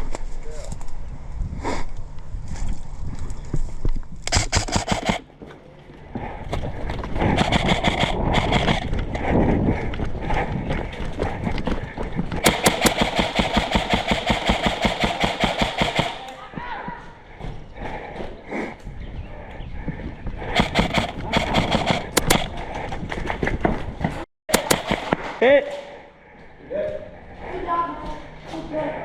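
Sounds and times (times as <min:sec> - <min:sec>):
airsoft rifle firing full auto: 0:12.4 - 0:16.4, 0:20.6 - 0:22.5, 0:24.5 - 0:25.3.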